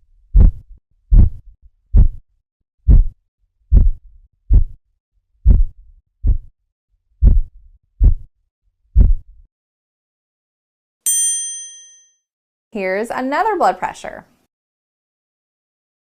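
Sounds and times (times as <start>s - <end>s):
heartbeat thumps through stethoscope: 0.3s - 2.2s, 2.9s - 4.8s, 5.4s - 6.5s, 7.2s - 8.3s, 8.9s - 9.4s.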